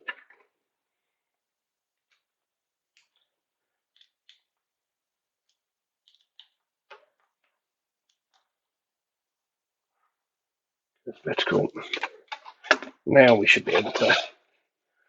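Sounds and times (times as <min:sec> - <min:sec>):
small parts clicking and tapping: 0:02.0 - 0:04.7, 0:05.4 - 0:08.6, 0:11.8 - 0:13.0.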